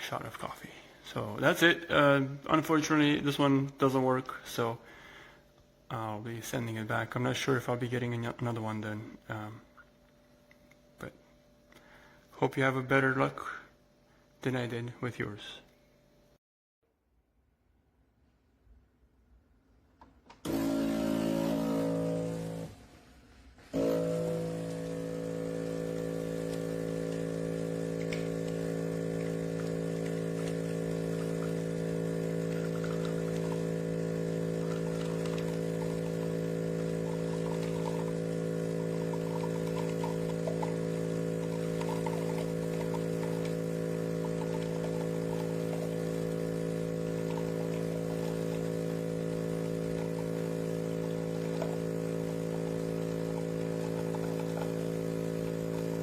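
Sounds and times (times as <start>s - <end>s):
espresso machine pump humming: 20.4s - 56.0s
liquid trickling: 32.4s - 33.7s.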